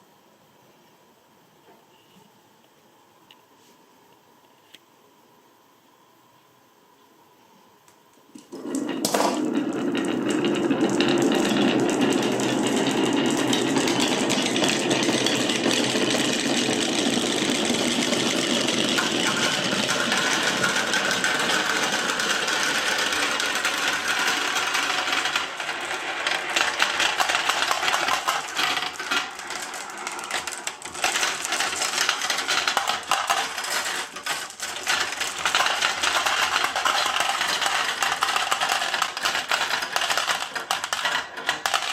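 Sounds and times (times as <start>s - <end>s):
glass marbles rolling and clattering: 8.4s - 41.9s.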